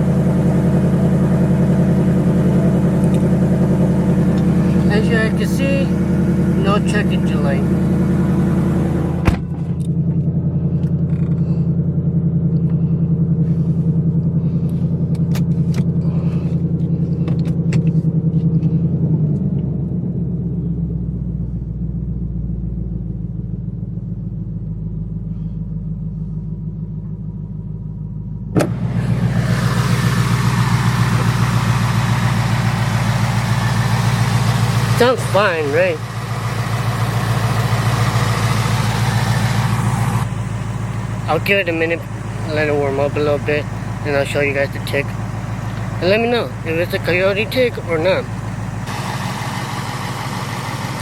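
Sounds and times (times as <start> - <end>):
car engine idling: 0.0 - 51.0.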